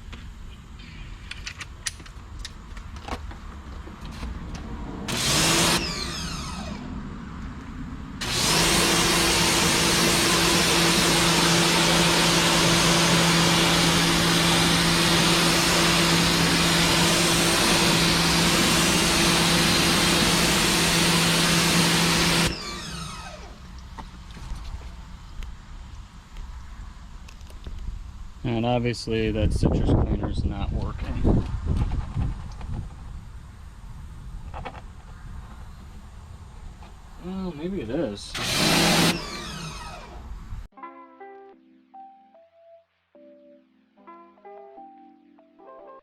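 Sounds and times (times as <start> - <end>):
pressure washer motor humming: 5.1 - 6.9, 8.2 - 23.7, 38.3 - 40.3
motor winding down whine: 5.1 - 7.0, 8.2 - 23.6, 38.3 - 40.7.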